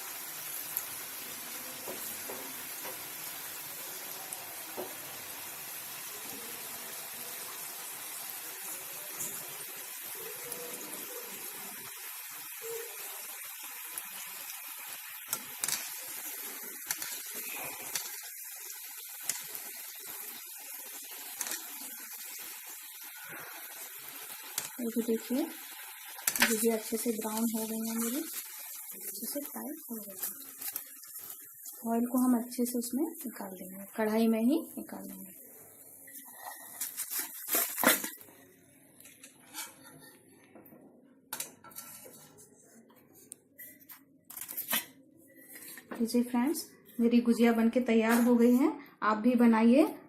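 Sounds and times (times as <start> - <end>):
pastries deep-frying in oil: 0.0 - 38.3
crackles and pops of oil: 15.3 - 16.0, 16.8 - 18.3, 21.3 - 21.6, 26.2 - 26.7.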